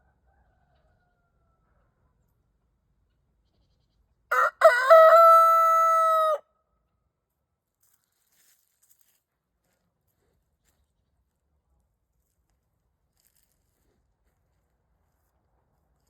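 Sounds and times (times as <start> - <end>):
rooster crowing: 4.3 - 6.4.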